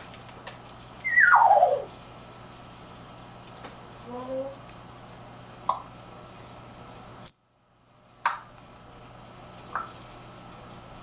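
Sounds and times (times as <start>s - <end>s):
parrot high squeak: 1.0s - 1.9s.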